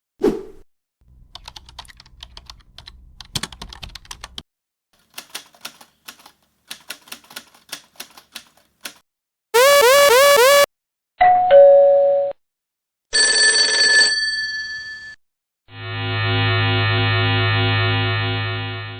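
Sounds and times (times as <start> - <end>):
keyboard typing: 1.2 - 4.4, 5.0 - 9.0
electronic ringing tone: 9.6 - 10.7.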